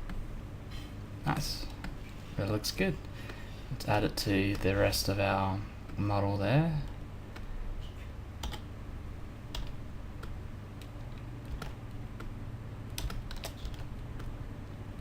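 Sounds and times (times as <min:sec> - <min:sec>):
steady low hum: 0:00.0 - 0:15.0
keyboard keys clicking: 0:08.4 - 0:08.6, 0:09.5 - 0:12.3, 0:12.9 - 0:14.4.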